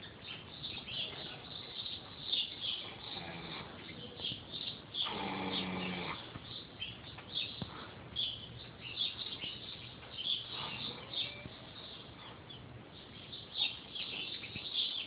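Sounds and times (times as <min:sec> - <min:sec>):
small birds chirping: 0:00.0 - 0:15.0
pet snoring: 0:02.9 - 0:04.0, 0:05.0 - 0:06.3.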